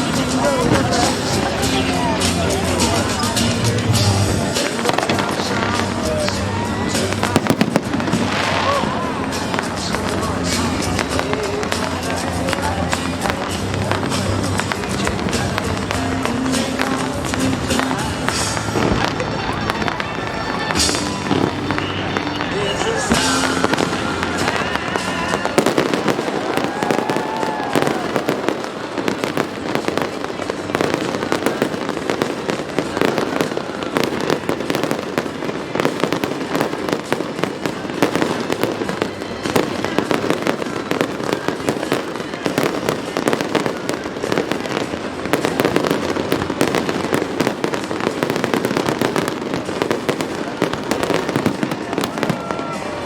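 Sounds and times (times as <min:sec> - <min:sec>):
fireworks bangs and crackling: 0:00.0 - 0:53.0.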